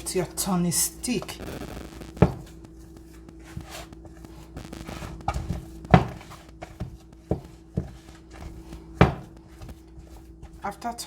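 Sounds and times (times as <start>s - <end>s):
stick knocking against a dish: 5.2s - 10.0s.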